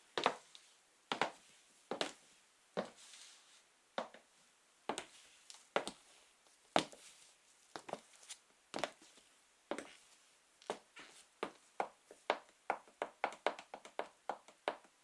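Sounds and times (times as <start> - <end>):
high heels tapping on floor: 11.8 - 15.0.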